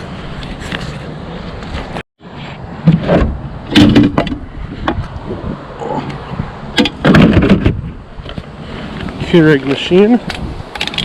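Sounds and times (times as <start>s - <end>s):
scrap items clunking and rattling: 0.4s - 5.0s, 6.8s - 8.5s.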